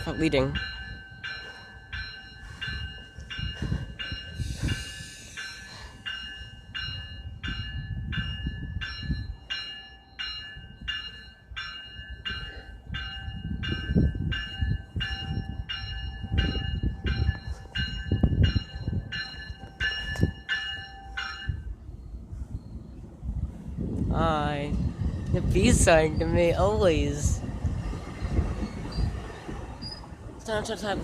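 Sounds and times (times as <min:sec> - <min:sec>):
crossing warning bell dinging: 0:00.0 - 0:23.2
train rumbling on rails: 0:00.0 - 0:31.0.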